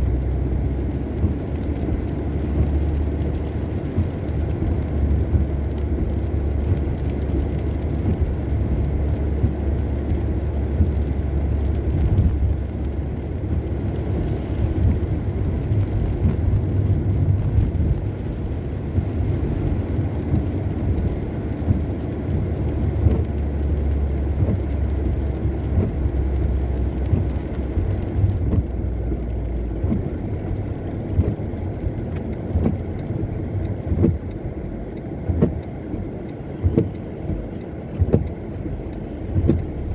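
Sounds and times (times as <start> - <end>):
car engine and road rumble: 0.0 - 39.9
rain hiss: 0.0 - 39.9
light ticks: 19.0 - 39.9.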